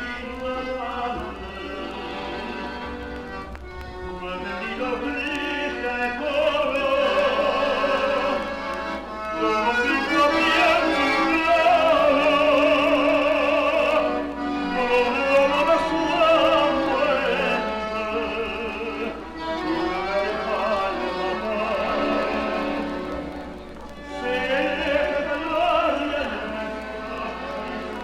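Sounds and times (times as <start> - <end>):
operatic singing with vibrato: 0.0 - 2.8, 3.9 - 28.0
instrumental music: 0.0 - 28.0.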